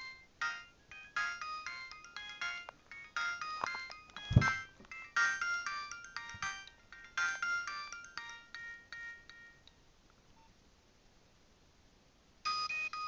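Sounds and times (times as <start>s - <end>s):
mobile phone ringtone: 0.0s - 9.6s, 12.5s - 13.0s
low thump: 4.3s - 4.7s.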